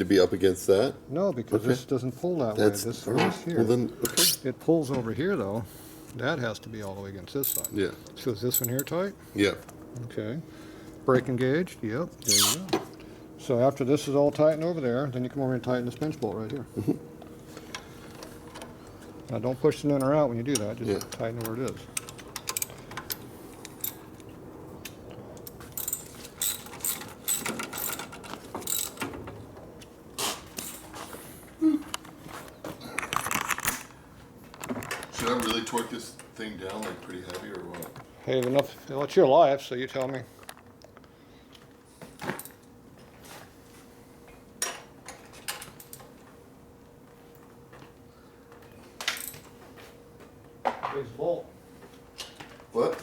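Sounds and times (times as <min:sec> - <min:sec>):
faint steady hum: 0:00.0 - 0:53.0
socket ratchet clicking: 0:12.2 - 0:12.6.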